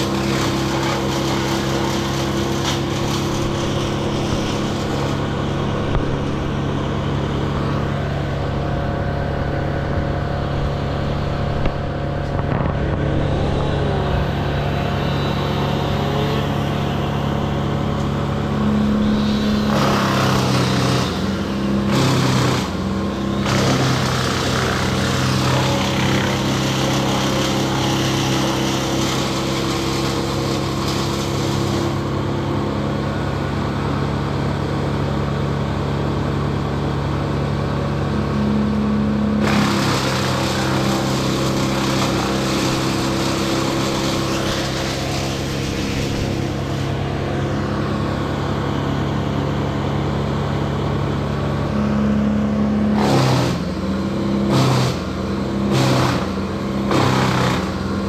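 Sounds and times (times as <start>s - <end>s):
engine running steadily: 0.0s - 58.0s
rushing noise: 3.2s - 25.9s.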